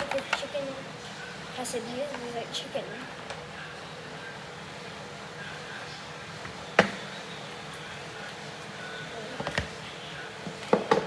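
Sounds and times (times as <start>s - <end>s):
kitchen items clattering on countertop: 10.5s - 11.0s.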